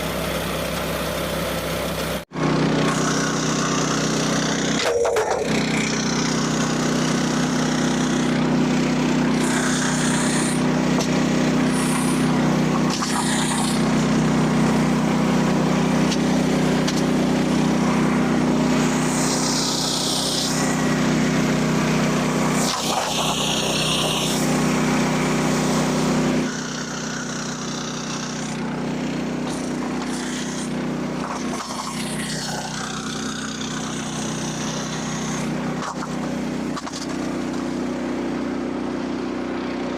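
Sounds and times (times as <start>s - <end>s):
band saw blade cutting wood: 0.0s - 38.4s
small petrol engine running: 0.0s - 39.9s.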